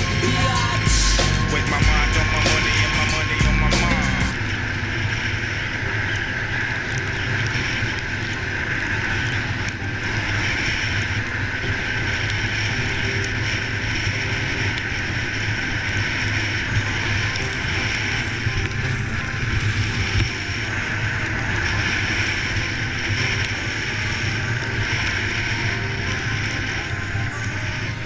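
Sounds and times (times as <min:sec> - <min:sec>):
snowmobile engine running: 0:00.0 - 0:04.4.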